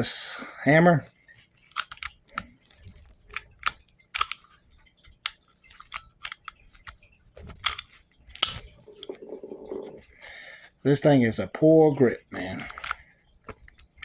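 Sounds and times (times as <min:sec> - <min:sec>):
pistol slide clicking: 0:01.7 - 0:09.2, 0:12.5 - 0:14.0.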